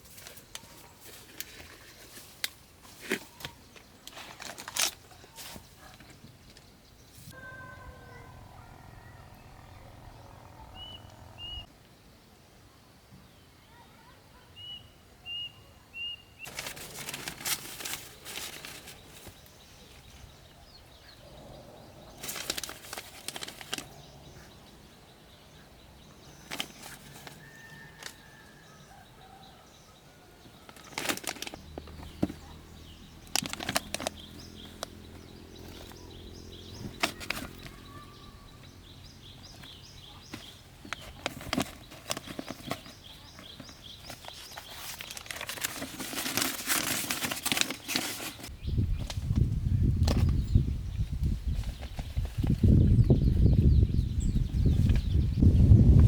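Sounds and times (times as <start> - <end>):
rustling and clicking handling noise: 0.0 - 6.8, 16.4 - 19.6, 22.2 - 24.1, 26.3 - 28.3, 30.4 - 36.1, 36.7 - 38.0, 39.4 - 49.4
bird chirps: 6.6 - 11.7.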